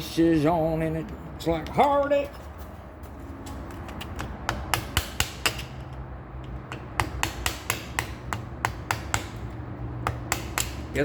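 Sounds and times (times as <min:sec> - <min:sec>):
hammer tapping on steel: 0:04.0 - 0:11.0.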